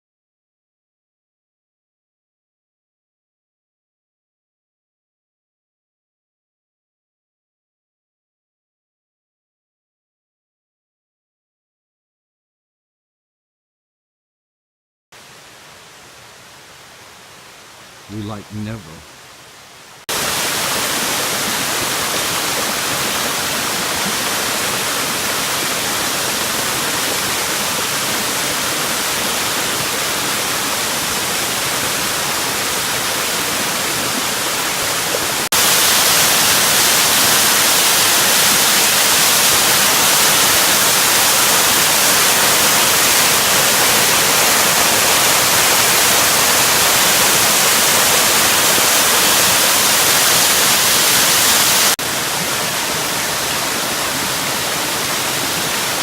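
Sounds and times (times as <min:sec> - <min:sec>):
waterfall rushing: 0:15.2 - 0:56.0.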